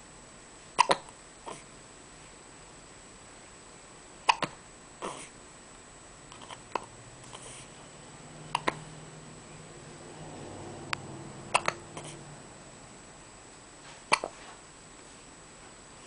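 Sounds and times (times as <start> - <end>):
person hiccuping: 0.8 - 1.6, 4.2 - 5.3, 8.5 - 8.8, 11.5 - 12.2, 14.1 - 14.4.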